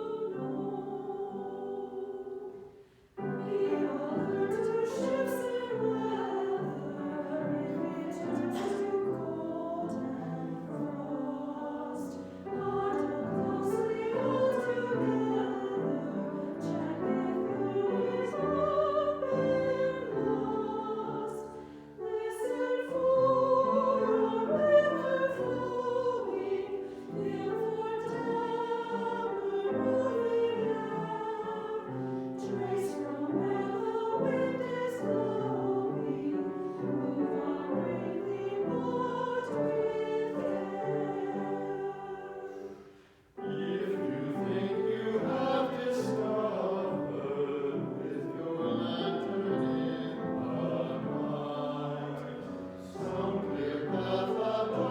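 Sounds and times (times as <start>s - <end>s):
church choir singing: 0.0s - 54.9s.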